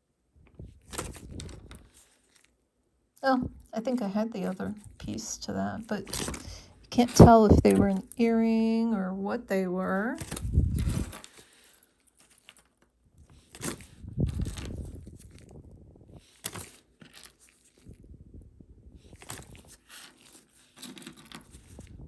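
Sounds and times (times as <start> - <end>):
bag rustling: 0.6 - 2.5, 3.4 - 8.3, 10.2 - 18.0, 19.0 - 22.0
earrings clicking: 5.8 - 8.3.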